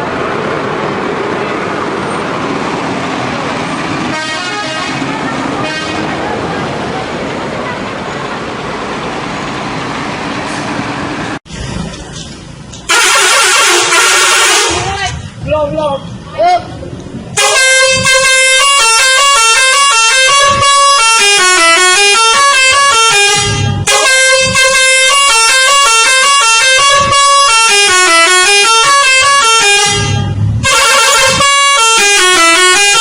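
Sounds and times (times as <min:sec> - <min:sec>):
multi-tone bus horn melody: 0:04.0 - 0:06.5, 0:12.9 - 0:15.2, 0:17.4 - 0:33.0.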